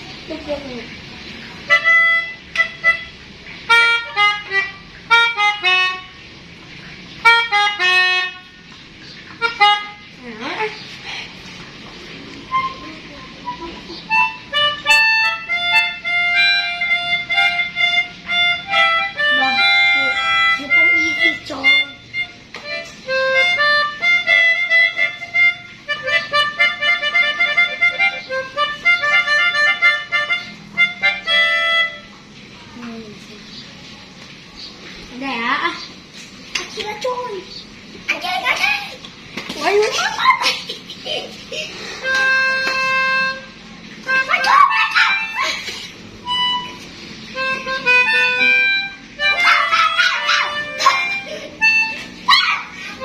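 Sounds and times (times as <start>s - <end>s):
melodica playing quick reedy notes: 1.7s - 6.2s, 7.2s - 8.5s, 9.4s - 10.1s, 12.5s - 32.1s, 42.0s - 45.5s, 46.2s - 52.2s.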